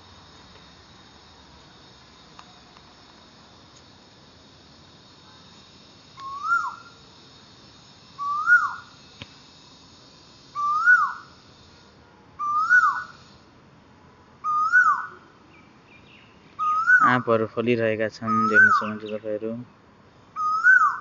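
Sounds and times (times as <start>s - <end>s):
faint high hiss: 0.0s - 21.0s
bird calling rising and falling: 6.2s - 6.9s, 8.2s - 8.9s, 10.6s - 11.3s, 12.4s - 13.3s, 14.4s - 15.2s, 16.0s - 17.3s, 18.2s - 19.2s, 20.4s - 21.0s.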